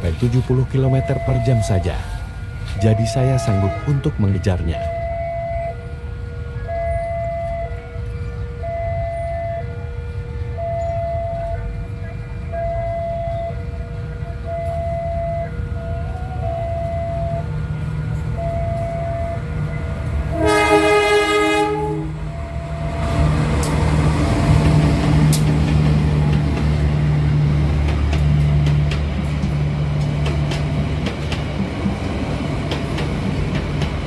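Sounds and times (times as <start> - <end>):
locomotive engine rumble: 0.0 - 34.0
train rail noise: 0.0 - 34.0
locomotive horn blast: 0.9 - 26.4.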